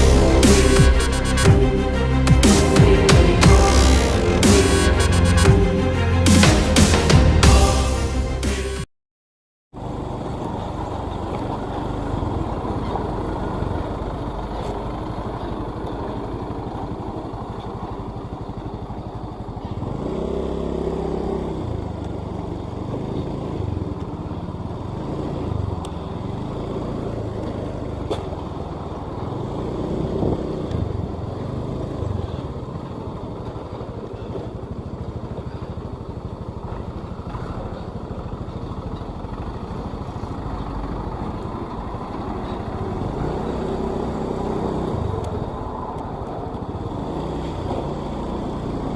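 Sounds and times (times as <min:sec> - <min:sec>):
vehicle engine and road noise: 0:00.0 - 0:08.9, 0:09.7 - 0:48.9.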